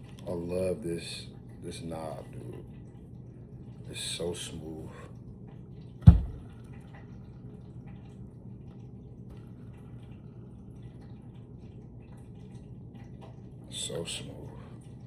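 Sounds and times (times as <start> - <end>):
loud thump: 6.1 - 6.6.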